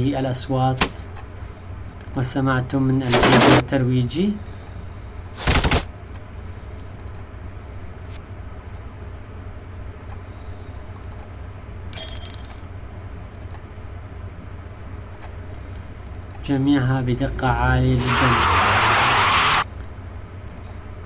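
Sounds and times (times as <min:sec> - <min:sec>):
steady low hum: 0:00.0 - 0:18.0
computer mouse clicks: 0:06.8 - 0:07.2, 0:11.0 - 0:11.3, 0:20.4 - 0:20.8
bright metallic clink: 0:12.0 - 0:12.6.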